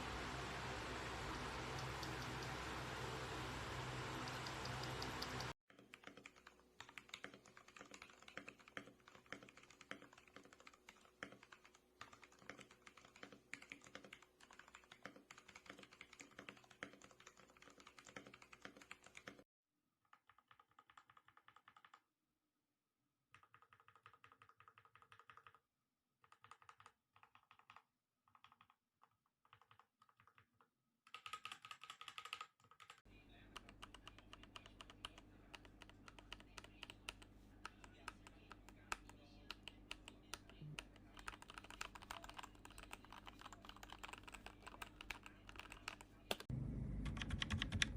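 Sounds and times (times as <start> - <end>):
low steady hum: 0.0 - 5.5, 46.1 - 47.9
typing on mechanical keyboard: 4.2 - 19.4, 20.0 - 22.0, 23.3 - 25.6, 26.2 - 47.9.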